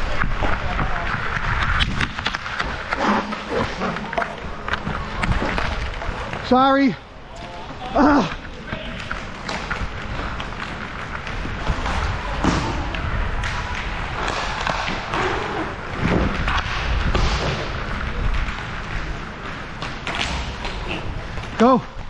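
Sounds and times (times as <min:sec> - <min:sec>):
low rumble of movement: 0:00.0 - 0:22.0
hockey sticks and puck knocking: 0:07.4 - 0:22.0.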